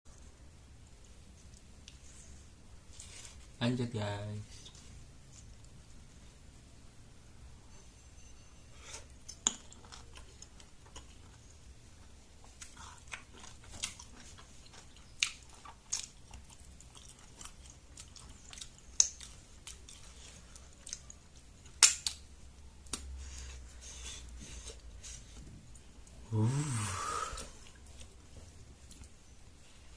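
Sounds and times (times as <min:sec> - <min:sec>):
person chewing crunchy fruit: 0:09.6 - 0:21.4.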